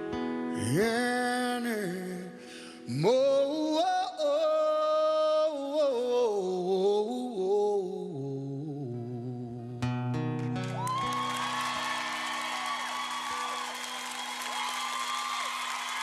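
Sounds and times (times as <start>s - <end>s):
man singing wordless ad-lib: 0.5s - 10.3s.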